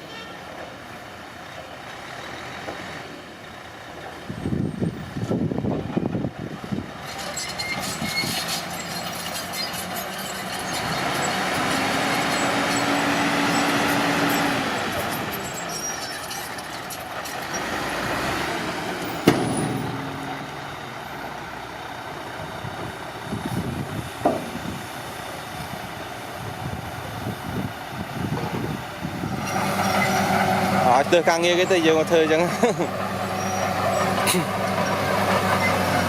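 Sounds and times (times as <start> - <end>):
heavy machinery engine running: 4.6 - 36.0
sharp metallic knock: 19.2 - 20.4.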